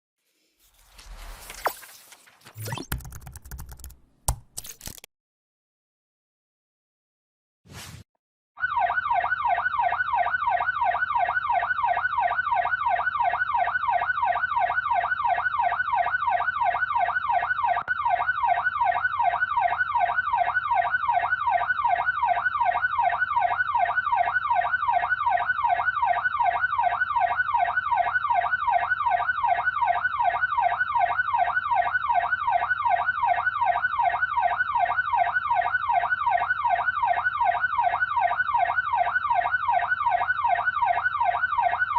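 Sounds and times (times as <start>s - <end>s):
police siren yelp: 8.6s - 41.9s.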